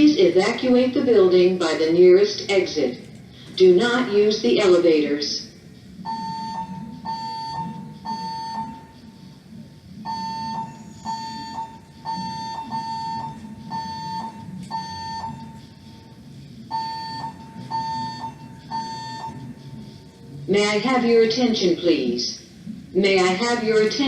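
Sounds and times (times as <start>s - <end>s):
fire alarm beeping: 6.0s - 9.2s, 10.0s - 19.9s.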